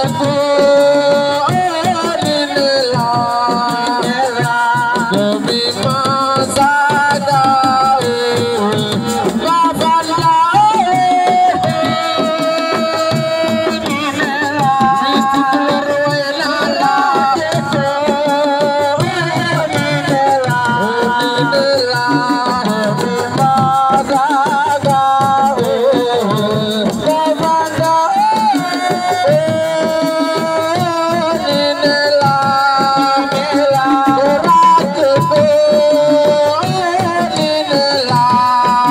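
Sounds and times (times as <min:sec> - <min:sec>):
fast hand drums: 0:00.0 - 0:38.9.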